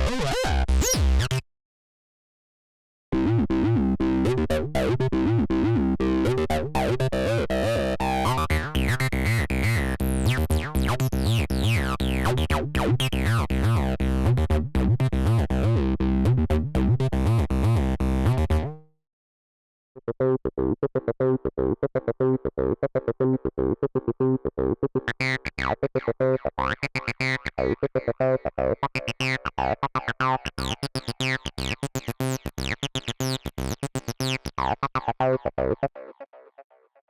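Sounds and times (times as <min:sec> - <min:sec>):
acid bass synthesizer sequence: 0:03.2 - 0:18.7, 0:28.6 - 0:35.8.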